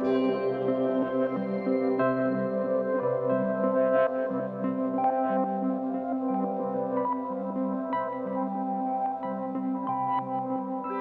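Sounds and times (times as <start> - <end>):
gentle chimes: 0.0 - 5.4
soft synthesizer notes: 0.0 - 11.0.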